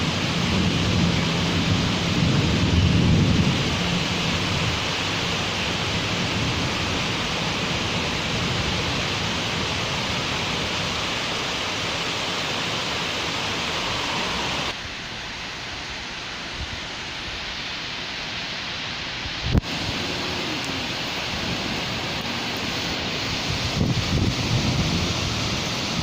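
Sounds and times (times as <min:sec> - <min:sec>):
thunder rumble: 0:00.0 - 0:12.0, 0:19.5 - 0:26.0
heavy rain falling: 0:00.0 - 0:26.0.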